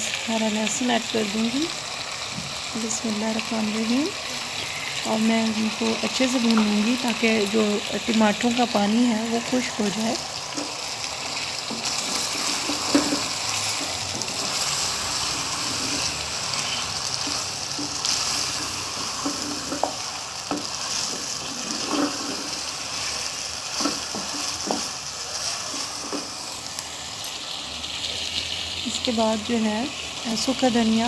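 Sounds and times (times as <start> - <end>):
food sizzling in a pan: 0.0 - 31.0
spoon scraping a pan: 11.7 - 14.9, 15.7 - 26.4.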